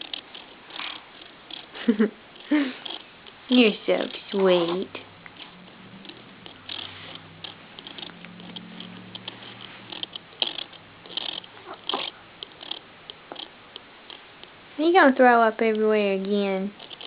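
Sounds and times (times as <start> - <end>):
faint low hum: 0.0 - 17.0.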